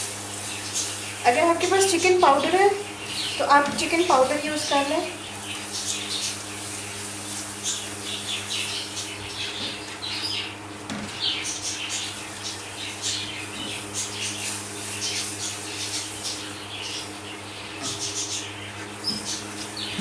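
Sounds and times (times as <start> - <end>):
hot oil sizzling and spitting: 0.0 - 10.0.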